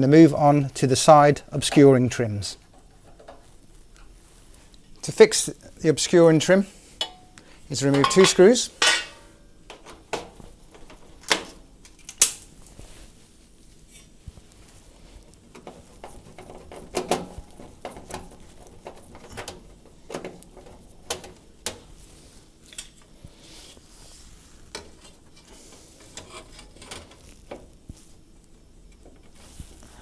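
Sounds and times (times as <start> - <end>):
metallic clicks and clinks: 7.8 - 9.2.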